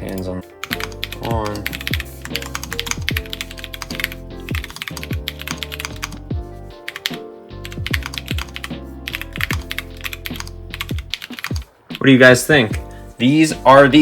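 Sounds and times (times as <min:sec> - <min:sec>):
mechanical keyboard typing: 0:00.1 - 0:06.3, 0:06.9 - 0:11.7.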